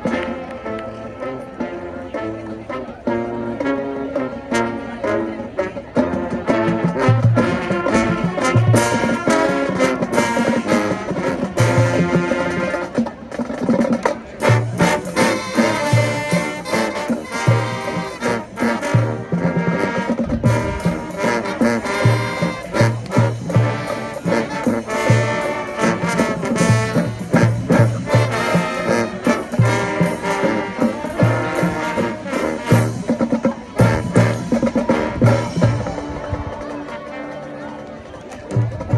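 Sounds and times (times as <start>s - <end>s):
marching band playing: 0.0s - 38.9s.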